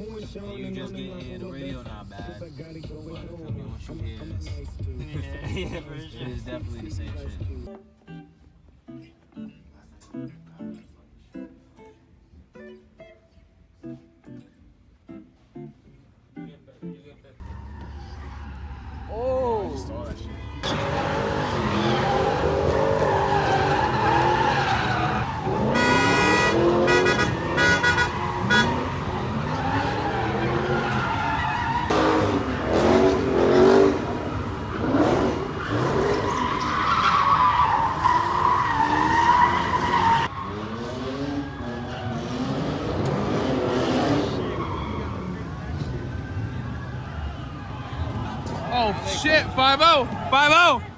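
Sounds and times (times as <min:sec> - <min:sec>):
car engines revving: 0:17.4 - 0:50.9
tyres squealing: 0:17.4 - 0:50.9.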